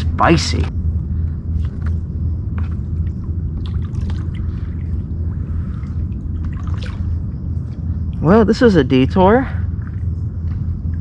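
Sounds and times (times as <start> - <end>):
low rumble: 0.0 - 11.0
water drips and splashes: 3.6 - 7.2.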